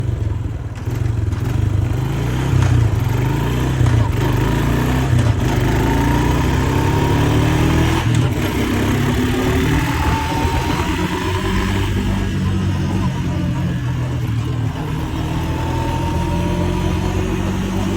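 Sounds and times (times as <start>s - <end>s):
motorcycle engine running: 0.0s - 17.9s
exhaust pops and crackles: 0.5s - 6.0s, 7.8s - 8.6s.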